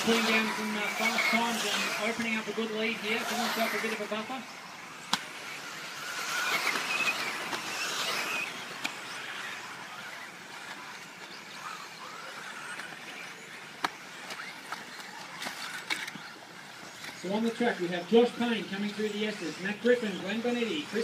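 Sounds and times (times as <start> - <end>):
electric motors whining: 0.0 - 21.0
tyre noise on dirt: 10.8 - 17.4.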